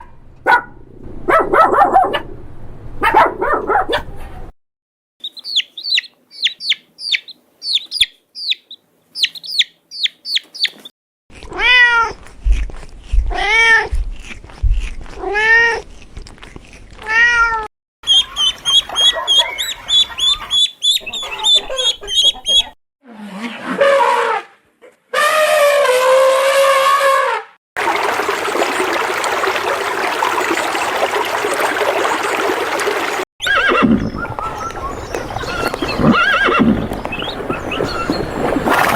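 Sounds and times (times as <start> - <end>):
cat meowing: 11.5 - 12.2.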